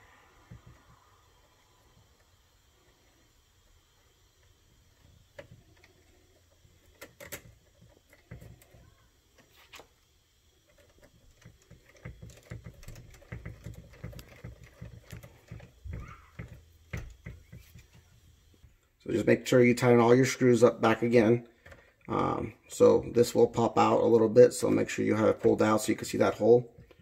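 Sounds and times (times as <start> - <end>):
small parts clicking and knocking: 4.2 - 18.7.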